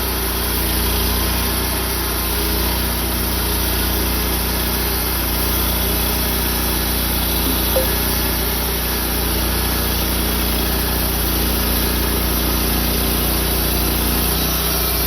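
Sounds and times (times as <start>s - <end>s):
saw cutting through log: 11.6s - 15.0s.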